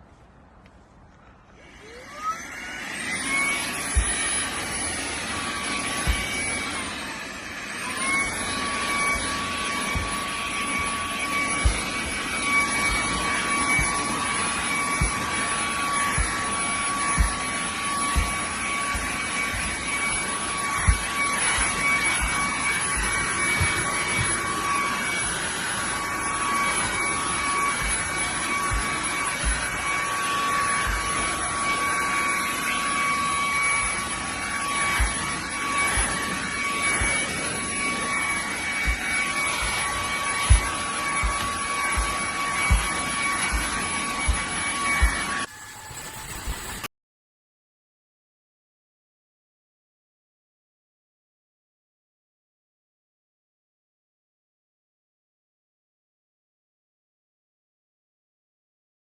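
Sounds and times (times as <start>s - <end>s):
handheld vacuum motor whine: 1.2s - 46.9s
soft low thumps: 9.9s - 12.1s, 18.1s - 19.9s, 20.8s - 24.5s, 38.8s - 45.3s
low thumps: 38.8s - 45.4s.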